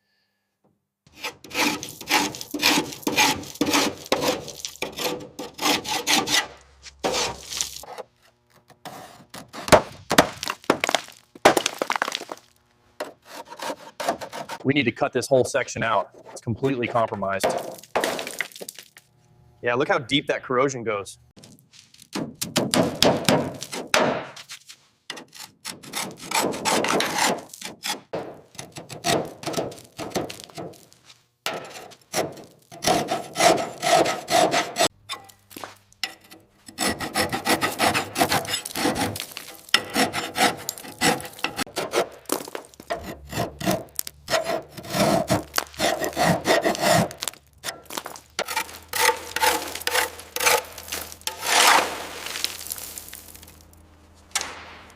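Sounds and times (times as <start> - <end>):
hand tool scraping corroded metal: 1.1 - 9.8, 13.0 - 18.7, 25.1 - 30.9, 31.5 - 53.7.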